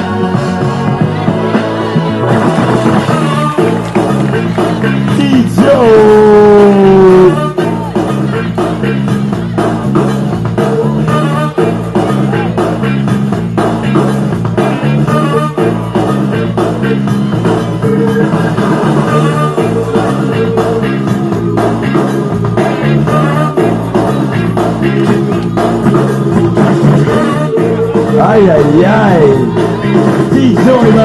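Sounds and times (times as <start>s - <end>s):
funk music with bass and drums: 0.0s - 31.0s.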